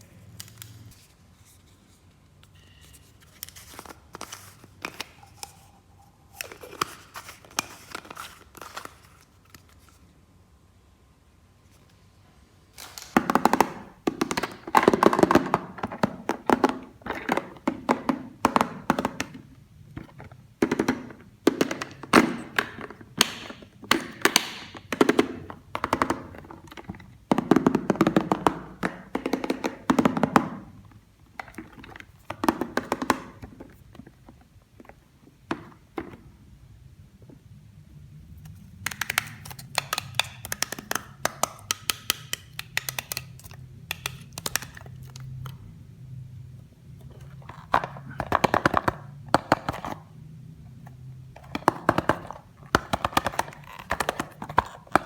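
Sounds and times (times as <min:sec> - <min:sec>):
plastic toy pieces clicking: 0:38.8 - 0:45.4.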